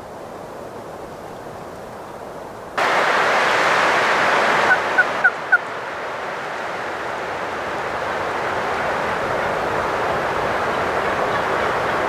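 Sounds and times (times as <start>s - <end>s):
wind rushing over microphone: 2.8s - 12.0s.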